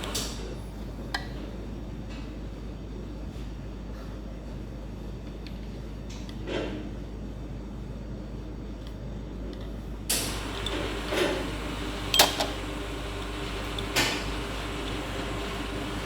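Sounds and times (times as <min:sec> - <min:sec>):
steady machine hum: 0:09.9 - 0:16.0
espresso machine lever creaking: 0:12.0 - 0:12.7.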